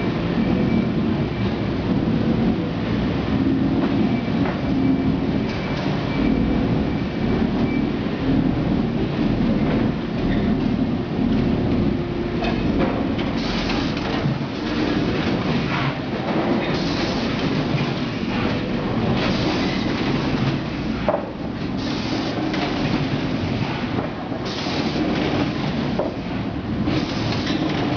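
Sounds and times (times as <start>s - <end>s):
packing machine clattering: 12.4s - 27.9s.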